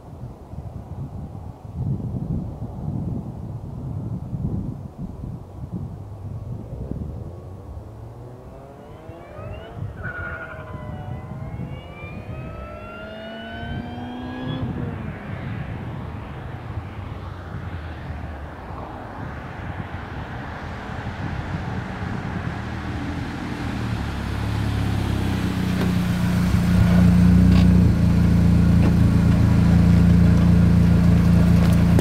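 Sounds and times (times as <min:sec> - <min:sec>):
wind noise: 0:00.0 - 0:32.0
car exhaust note: 0:06.0 - 0:16.2, 0:21.3 - 0:32.0
supercharger whine: 0:06.0 - 0:32.0.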